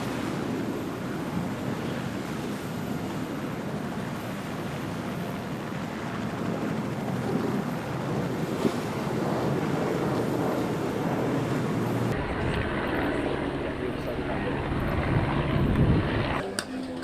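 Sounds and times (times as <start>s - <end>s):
wind buffeting microphone: 0.3s - 16.4s
rushing water: 12.0s - 16.4s
deep steady rumble: 12.1s - 16.4s.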